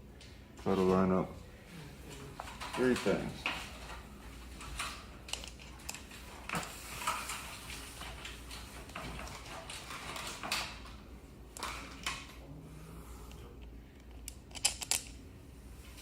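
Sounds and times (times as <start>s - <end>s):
metal parts clicking and scraping: 4.7s - 10.7s, 14.0s - 15.2s.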